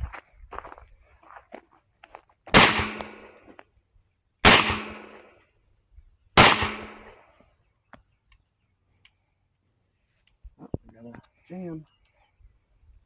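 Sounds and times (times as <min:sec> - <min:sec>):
revolver shots with echo: 0:02.6 - 0:03.2, 0:04.5 - 0:05.2, 0:06.4 - 0:07.1.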